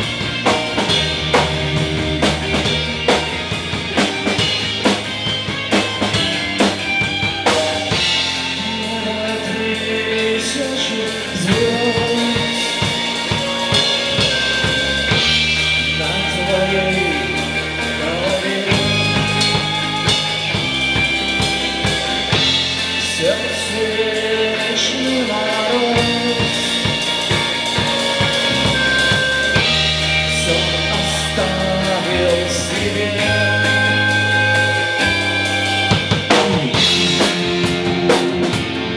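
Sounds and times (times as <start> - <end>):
live band playing: 0.0 - 38.9
bass drum and snare beat: 35.9 - 38.9.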